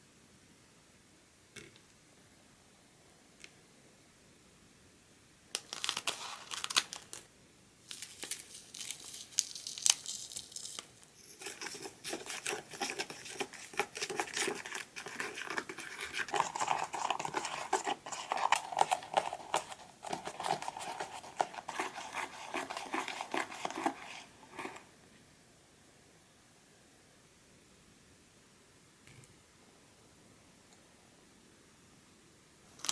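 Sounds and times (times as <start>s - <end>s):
packaging crinkling and tearing: 5.6s - 24.8s.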